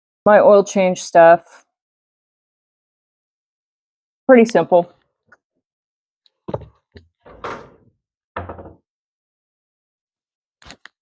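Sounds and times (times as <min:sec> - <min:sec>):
knocks on a cabinet: 0:06.5 - 0:07.8, 0:08.4 - 0:08.8
cabinet closing thud: 0:06.5 - 0:08.8
drawer sliding: 0:06.5 - 0:08.8.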